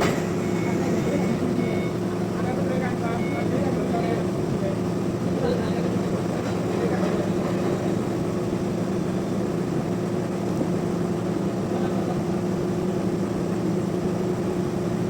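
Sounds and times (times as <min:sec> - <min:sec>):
sawmill machinery humming: 0:00.0 - 0:05.0.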